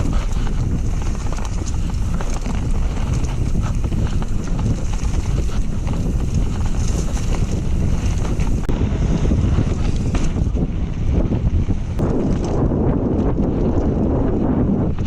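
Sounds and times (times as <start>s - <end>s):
bike rattling and knocking: 0.0s - 15.0s
wind rushing over microphone: 0.0s - 15.0s.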